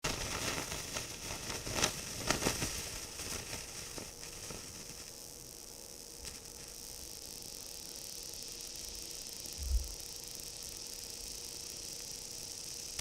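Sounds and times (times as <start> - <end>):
sharp sparkler pops: 0.0 - 5.2, 6.1 - 13.0
sparkler fizzing and hissing: 0.0 - 13.0.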